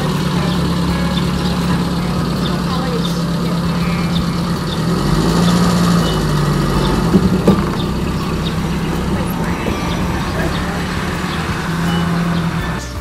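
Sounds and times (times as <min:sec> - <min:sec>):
vehicle engine running: 0:00.0 - 0:13.0.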